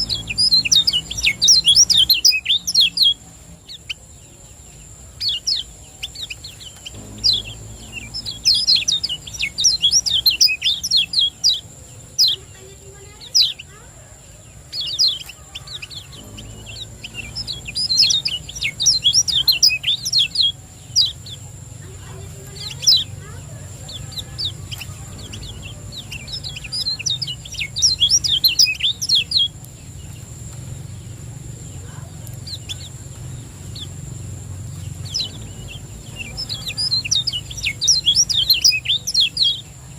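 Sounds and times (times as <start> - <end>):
bird singing rapid high chirps: 0.0 - 39.9
steady low hum: 0.0 - 39.9
faint thin high tone: 7.0 - 9.2.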